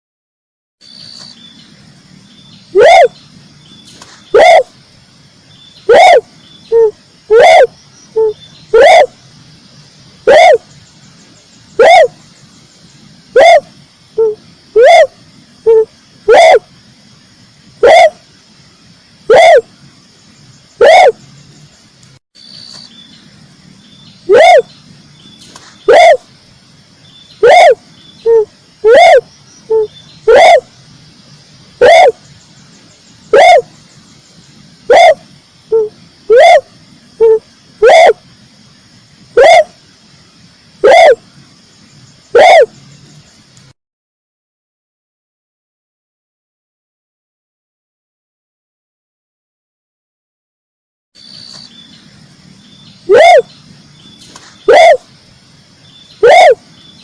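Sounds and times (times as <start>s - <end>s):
faint bird chirps: 0.8s - 43.8s, 51.2s - 57.0s
dove cooing: 2.8s - 3.2s, 4.3s - 4.7s, 5.9s - 9.2s, 10.2s - 10.7s, 11.8s - 12.2s, 13.3s - 16.7s, 17.8s - 18.2s, 19.3s - 19.7s, 20.8s - 21.2s, 24.3s - 24.7s, 25.6s - 26.3s, 27.4s - 30.7s, 31.8s - 32.2s, 33.3s - 33.7s, 34.9s - 38.2s, 39.4s - 39.8s, 40.8s - 41.2s, 42.3s - 42.8s, 53.1s - 53.5s, 54.3s - 55.1s, 56.2s - 56.7s.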